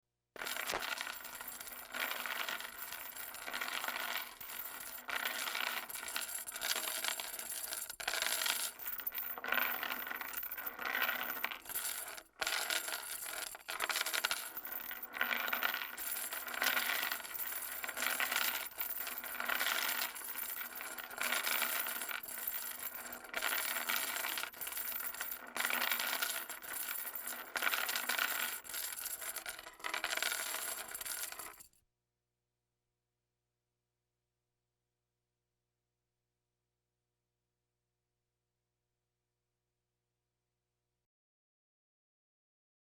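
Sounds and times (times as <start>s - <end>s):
chain dragged over concrete: 0.4s - 31.7s.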